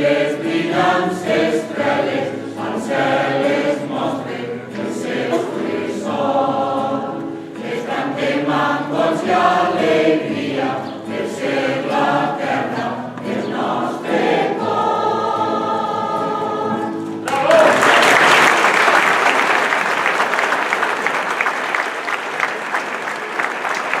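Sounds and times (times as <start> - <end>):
choir singing: 0.0 - 17.9
audience applause: 17.2 - 24.0.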